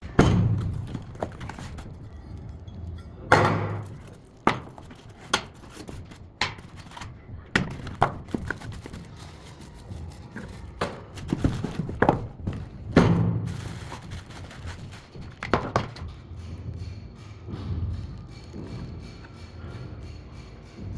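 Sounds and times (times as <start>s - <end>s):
knocks of tool being handled: 2.9s - 16.9s.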